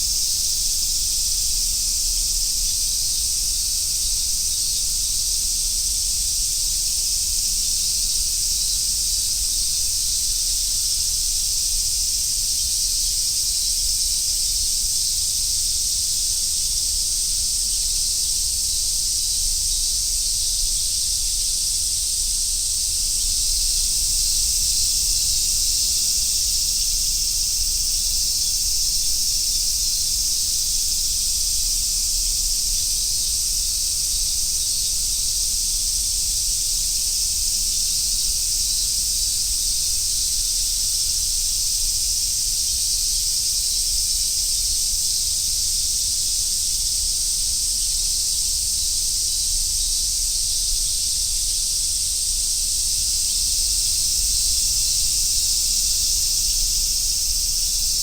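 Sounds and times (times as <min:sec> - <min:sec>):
cicadas singing: 0:00.0 - 0:58.0.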